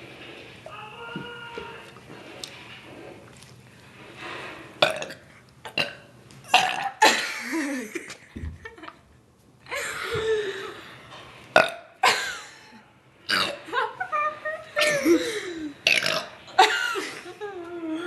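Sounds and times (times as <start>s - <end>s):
person burping: 4.8s - 7.4s, 11.6s - 12.2s, 13.3s - 13.6s, 14.8s - 16.4s.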